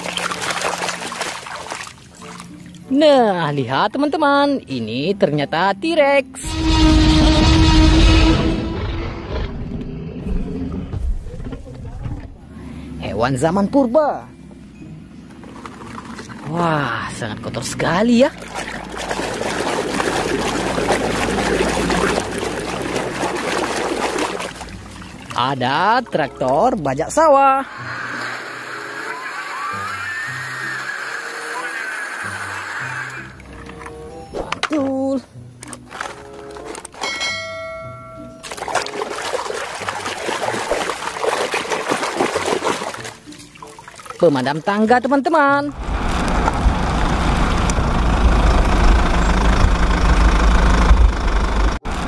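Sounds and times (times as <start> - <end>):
water splashing in a basin: 0.0 - 2.8, 17.6 - 26.6, 38.4 - 45.2
held musical note: 6.4 - 9.2.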